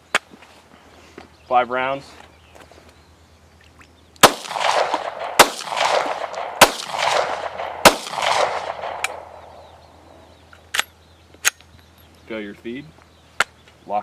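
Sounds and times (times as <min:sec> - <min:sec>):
pistol shots echoing: 0:04.2 - 0:09.8.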